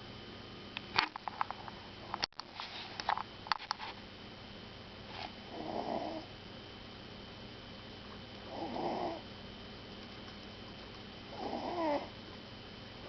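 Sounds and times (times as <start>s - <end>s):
puppy snoring: 5.4s - 6.3s, 8.5s - 9.3s, 11.3s - 12.2s.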